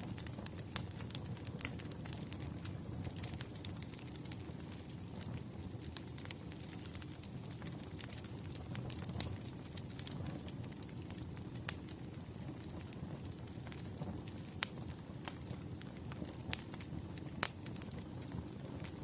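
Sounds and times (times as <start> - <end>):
fire crackles and pops: 0.0 - 19.0
wood fire rumbling: 0.0 - 19.0.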